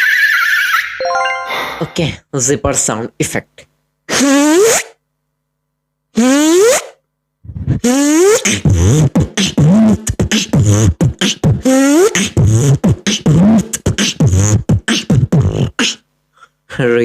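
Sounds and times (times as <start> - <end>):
beatboxing imitating a zipper: 4.1 - 5.0, 6.1 - 16.6.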